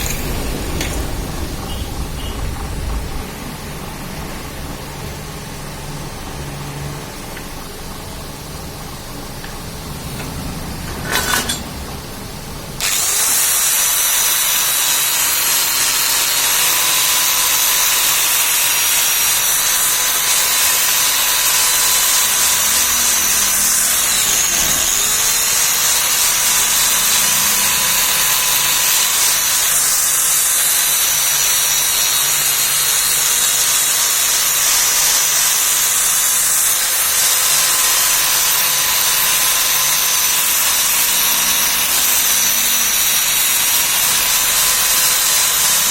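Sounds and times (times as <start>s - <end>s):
torch flame hissing: 12.8s - 45.9s.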